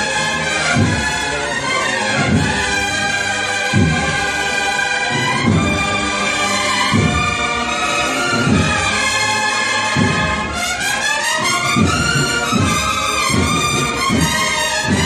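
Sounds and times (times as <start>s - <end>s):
brass playing melody: 0.0s - 15.0s
bass drum beats: 0.7s - 1.3s, 2.1s - 2.9s, 3.7s - 4.4s, 5.2s - 7.6s, 9.9s - 10.6s, 11.5s - 15.0s.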